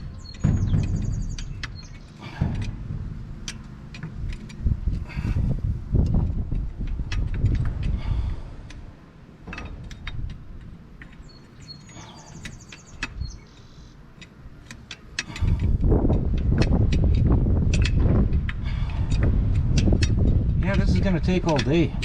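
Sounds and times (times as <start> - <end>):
low rumbling knocks: 0.0 - 8.7, 15.3 - 22.0.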